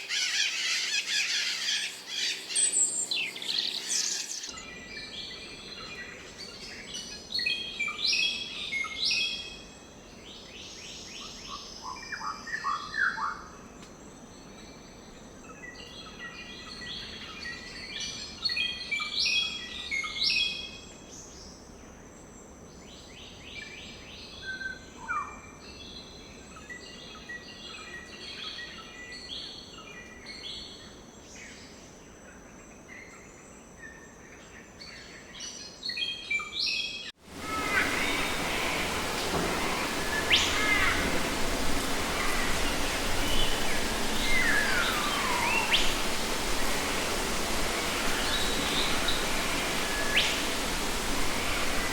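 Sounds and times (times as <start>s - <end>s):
birds chirping and trilling: 0.0s - 7.5s, 35.0s - 51.9s
steady background hiss: 0.0s - 51.9s.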